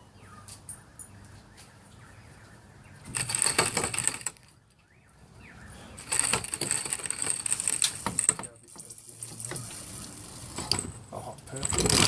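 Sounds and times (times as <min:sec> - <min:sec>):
rapid metallic rattling: 0:03.1 - 0:04.6, 0:06.0 - 0:12.0.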